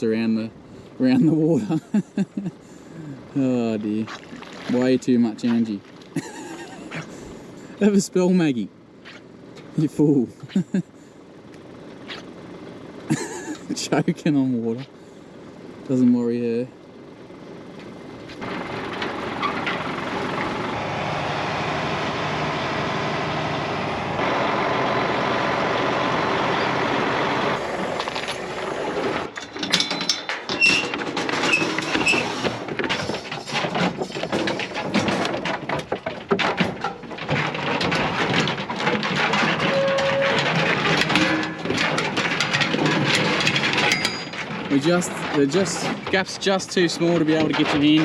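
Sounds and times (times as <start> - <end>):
vehicle engine running: 0.0 - 29.6, 31.1 - 48.0
metallic clanks and rattles: 17.2 - 21.1, 27.6 - 48.0.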